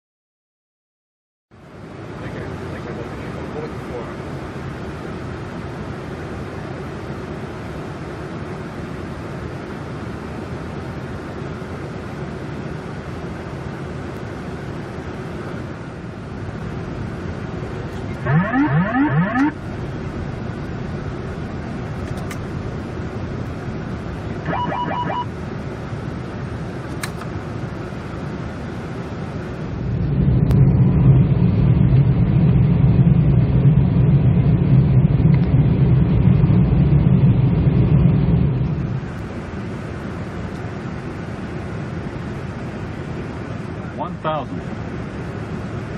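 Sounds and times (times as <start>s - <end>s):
aircraft airflow rush: 1.6s - 45.9s
loud low rumble: 16.1s - 26.6s, 29.6s - 39.5s
rapid beeps: 18.2s - 19.6s, 24.5s - 25.3s
rising electronic chirps: 18.2s - 19.6s, 24.4s - 25.3s.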